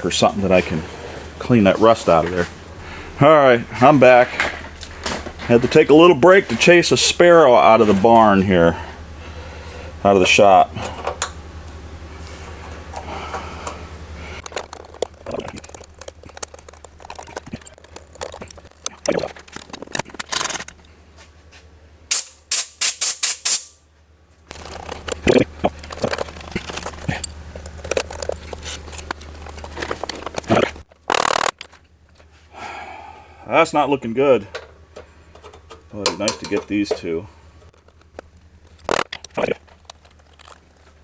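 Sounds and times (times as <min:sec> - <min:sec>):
aerosol can hissing: 0:22.1 - 0:23.7.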